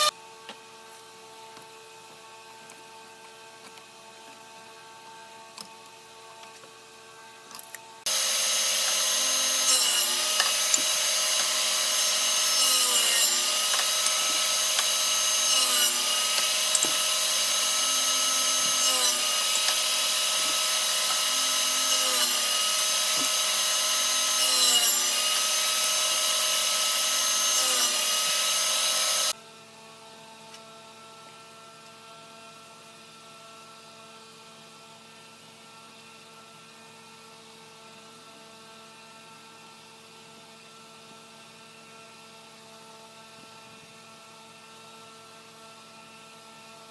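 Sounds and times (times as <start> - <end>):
electric sander on wood: 8.1 - 29.4.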